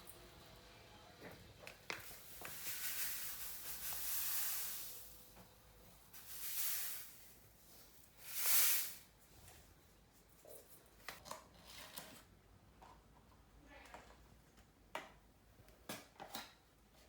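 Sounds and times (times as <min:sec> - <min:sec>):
ingredients pouring with soft hiss: 0:01.2 - 0:09.1.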